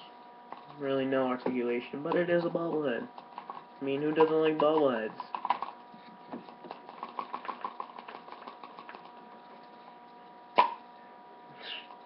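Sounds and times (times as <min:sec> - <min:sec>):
bobblehead spring rapid clicks: 0:02.1 - 0:05.8, 0:06.7 - 0:09.2.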